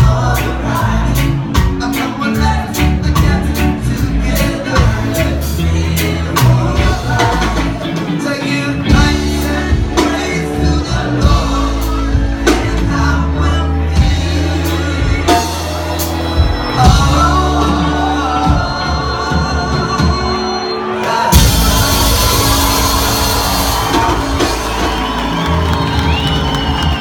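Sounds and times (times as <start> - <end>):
bass line: 0.0 - 27.0
person singing: 0.0 - 27.0
reggae band playing: 0.0 - 27.0
drum hits: 21.3 - 27.0.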